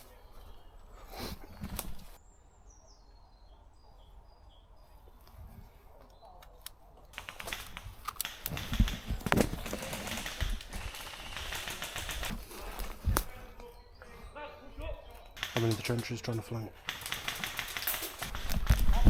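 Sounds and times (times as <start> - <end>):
songbird singing: 0.0 - 19.0
airsoft guns firing: 7.2 - 13.4, 15.3 - 19.0
heavy thumps: 7.2 - 13.4.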